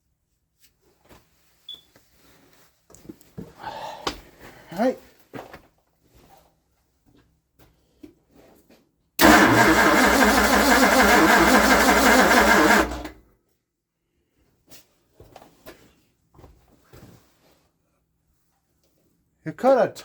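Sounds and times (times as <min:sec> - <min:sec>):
engine starter cranking: 0:09.2 - 0:13.2.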